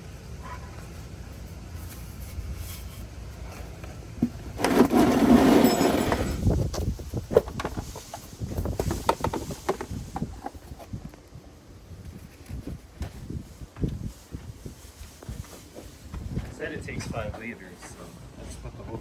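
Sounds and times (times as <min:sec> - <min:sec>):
loud rustling rush: 0:12.1 - 0:16.6.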